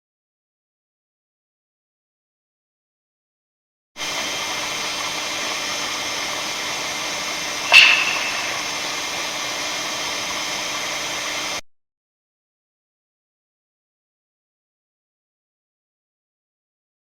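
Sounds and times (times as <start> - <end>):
steady background hiss: 4.2 - 11.6
sharp clap: 7.7 - 8.8.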